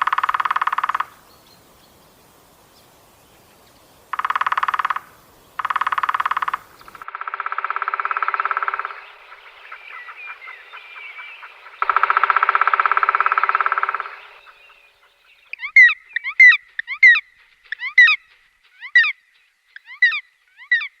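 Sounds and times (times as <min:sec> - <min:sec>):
woodpecker drumming: 0:00.0 - 0:20.9
bird sharp call notes: 0:04.1 - 0:07.1.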